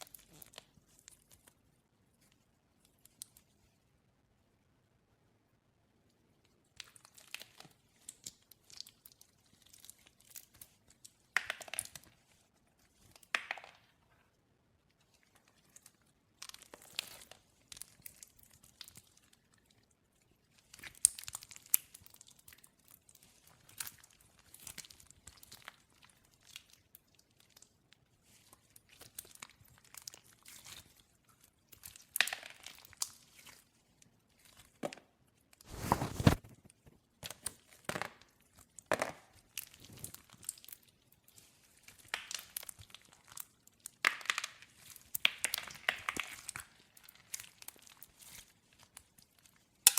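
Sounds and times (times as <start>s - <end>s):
slime crackling and popping: 6.8s - 14.0s, 15.3s - 49.9s.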